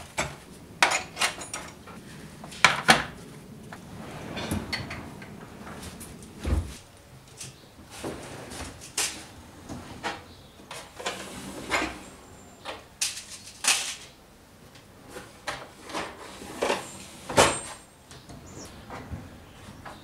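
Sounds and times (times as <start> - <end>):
drawer sliding in and out: 3.8 - 6.8, 7.9 - 12.2, 15.1 - 17.8.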